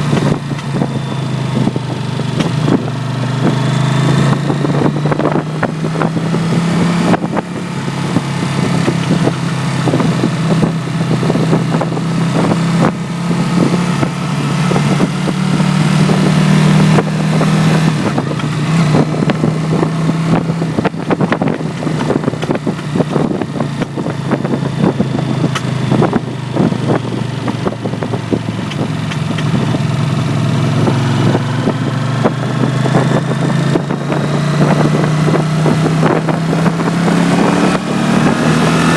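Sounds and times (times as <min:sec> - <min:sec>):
motorcycle engine running: 0:00.0 - 0:38.9
exhaust cracks and pops: 0:02.3 - 0:02.9, 0:17.8 - 0:29.9.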